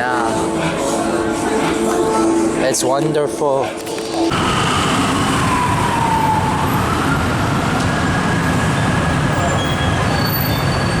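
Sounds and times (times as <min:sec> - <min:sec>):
street traffic: 0:00.0 - 0:11.0
emergency siren wailing: 0:04.3 - 0:11.0.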